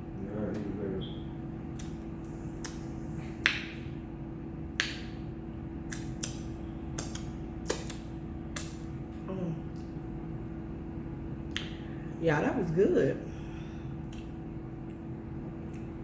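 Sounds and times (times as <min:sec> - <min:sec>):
steady low hum: 0:00.0 - 0:16.0
chewing mouth smacks: 0:05.9 - 0:09.0, 0:11.5 - 0:11.8, 0:14.1 - 0:15.0, 0:15.6 - 0:16.0.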